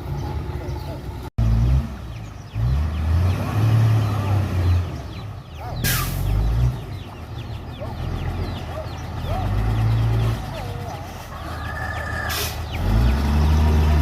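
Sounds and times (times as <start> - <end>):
diesel machinery engine: 0.0 - 14.0
chickens clucking: 4.2 - 14.0.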